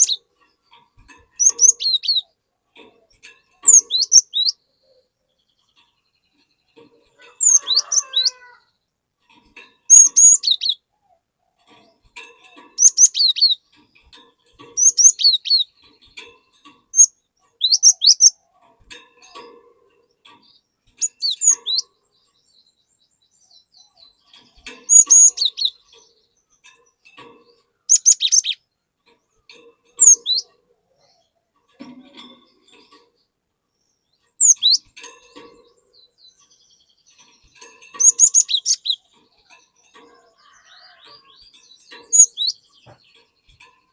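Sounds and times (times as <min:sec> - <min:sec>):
bird chirping: 0:00.0 - 0:43.9.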